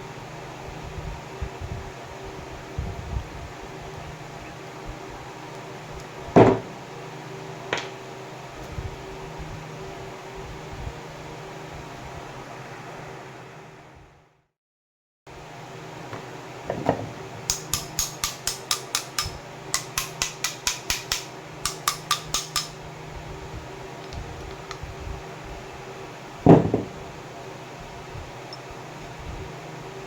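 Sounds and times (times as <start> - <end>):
hand tool tapping on metal: 17.5 - 22.8
heavier knock on metal: 26.5 - 27.0.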